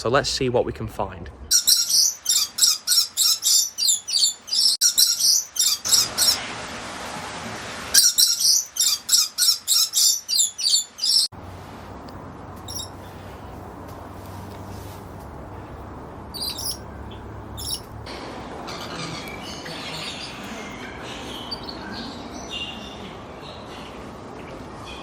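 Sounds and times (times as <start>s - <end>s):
bird giving shrill calls: 1.5s - 6.4s, 8.0s - 11.3s, 12.7s - 12.9s, 16.3s - 16.9s, 17.6s - 17.9s.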